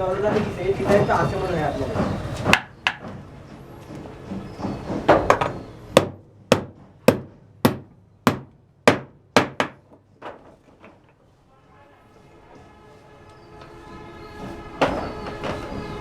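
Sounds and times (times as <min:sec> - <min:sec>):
hammer striking wood: 0:02.5 - 0:03.2, 0:05.0 - 0:10.4.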